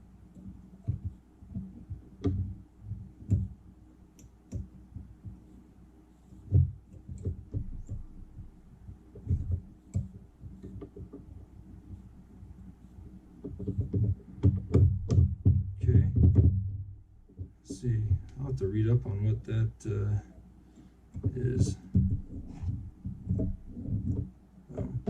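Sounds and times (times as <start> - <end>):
faint low hum: 0.0 - 25.0
soft thumps and clicks at vise: 0.2 - 25.0.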